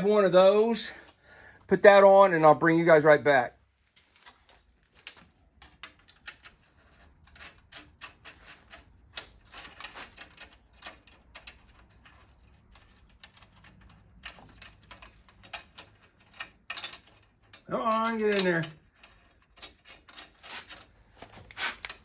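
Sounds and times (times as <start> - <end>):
small metal parts clicking: 4.5 - 21.0.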